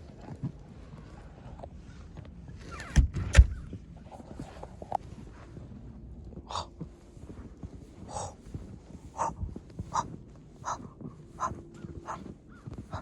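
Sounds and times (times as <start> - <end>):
low background rumble: 0.0 - 13.0
harsh animal calls: 9.2 - 10.8, 11.4 - 12.2.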